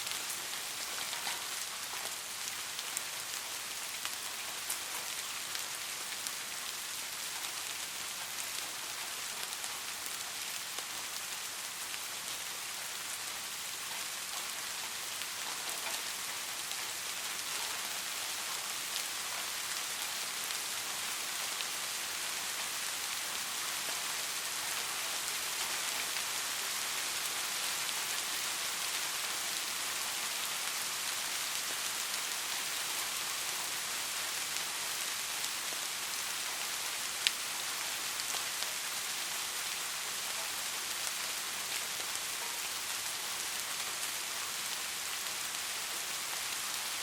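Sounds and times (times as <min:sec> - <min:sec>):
raindrop ticks: 0:00.0 - 0:06.4, 0:13.8 - 0:21.7, 0:39.6 - 0:43.2
light rain hissing: 0:00.0 - 0:47.0.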